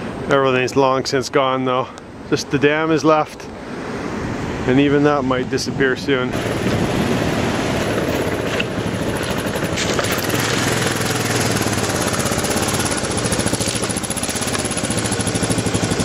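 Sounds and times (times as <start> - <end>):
motorcycle engine running: 6.4 - 16.0.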